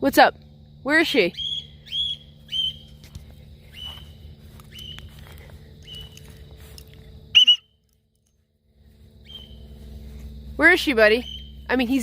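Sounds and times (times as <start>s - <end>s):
cockatiel whistled calls: 1.4s - 2.9s, 7.4s - 7.7s.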